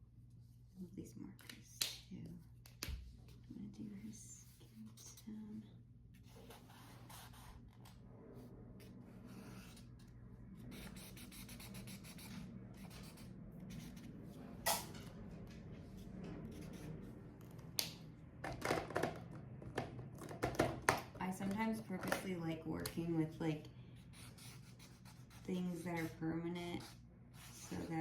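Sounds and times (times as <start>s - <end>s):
marker rubbing on paper: 24.1s - 28.0s.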